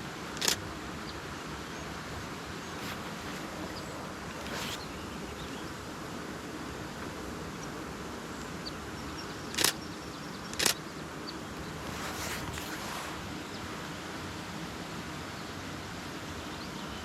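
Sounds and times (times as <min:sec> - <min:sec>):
camera shutter clicks: 0:00.4 - 0:00.6, 0:09.6 - 0:09.8, 0:10.6 - 0:10.8.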